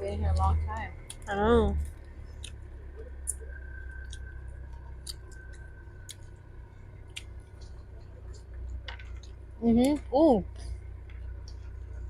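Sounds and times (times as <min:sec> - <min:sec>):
low steady hum: 0:00.0 - 0:12.0
chewing food clicks: 0:04.0 - 0:06.3.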